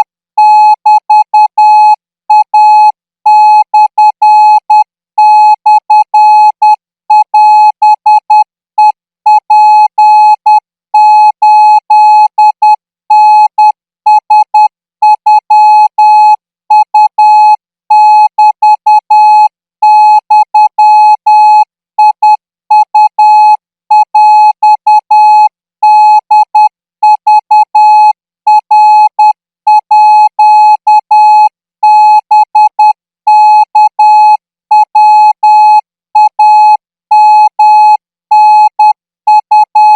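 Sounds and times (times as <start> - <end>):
morse code beeps: 6.4 - 9.7, 38.3 - 39.9.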